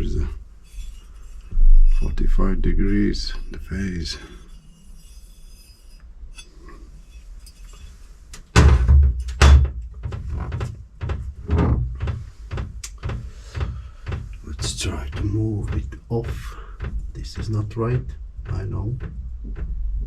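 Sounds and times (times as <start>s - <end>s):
heavy knocks and thunks: 8.6s - 20.0s.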